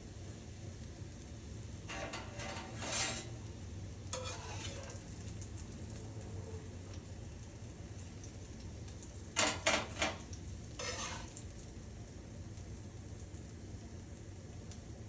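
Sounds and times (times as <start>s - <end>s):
food sizzling in hot oil: 0.0s - 15.0s
metal utensil scraping a pan: 1.9s - 3.5s, 4.1s - 5.1s, 9.4s - 11.5s.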